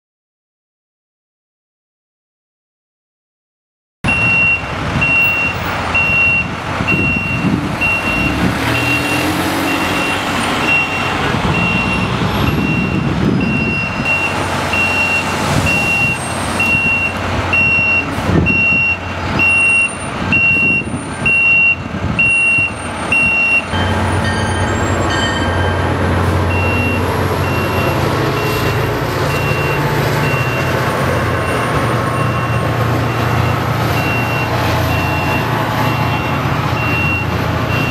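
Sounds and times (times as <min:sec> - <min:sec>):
street traffic: 0:04.0 - 0:37.9
deep truck engine hum: 0:04.1 - 0:37.9
engine noise: 0:04.1 - 0:37.9
truck reversing alarm beeping: 0:04.1 - 0:37.9.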